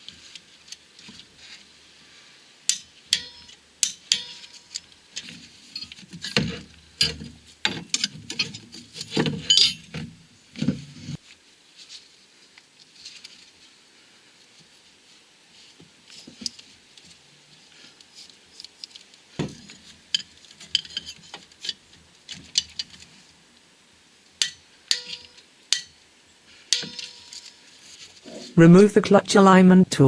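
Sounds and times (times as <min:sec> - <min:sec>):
hand tools clinking on metal: 0:02.7 - 0:10.1, 0:19.6 - 0:21.8, 0:24.4 - 0:26.0, 0:26.7 - 0:27.8.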